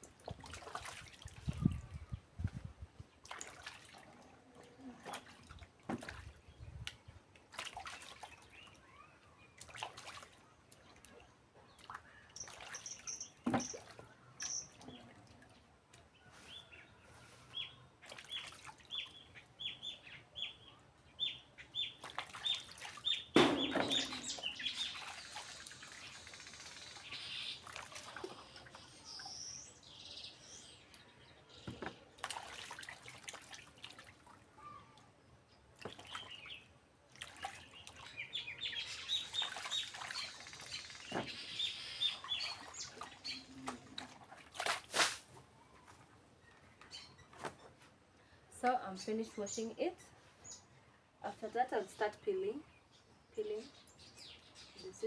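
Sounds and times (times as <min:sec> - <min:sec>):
water splashing from washing: 0:00.0 - 0:01.9, 0:03.2 - 0:04.2, 0:04.9 - 0:06.4, 0:07.4 - 0:08.5, 0:22.0 - 0:28.7, 0:31.8 - 0:34.4, 0:39.0 - 0:41.5, 0:42.1 - 0:45.4
small birds chirping: 0:07.9 - 0:32.2, 0:35.5 - 0:44.0, 0:51.5 - 0:55.0
sharp knocks: 0:23.4 - 0:24.6.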